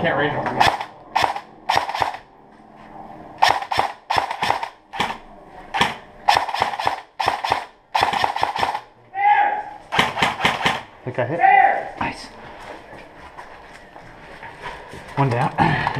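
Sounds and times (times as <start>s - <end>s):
airsoft rifle firing bursts: 0.6s - 2.2s, 3.4s - 5.2s, 5.8s - 8.9s, 9.9s - 10.9s.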